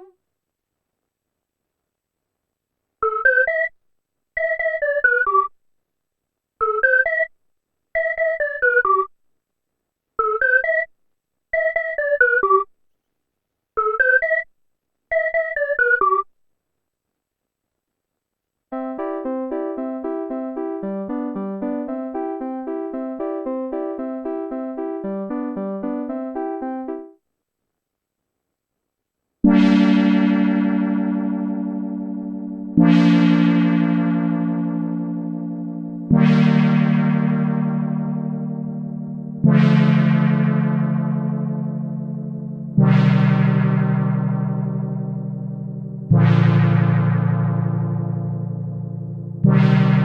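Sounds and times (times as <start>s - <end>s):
rapidly repeated synth notes: 18.7s - 27.2s, 29.5s - 50.0s
synth bass notes: 18.8s - 27.1s, 29.5s - 50.0s.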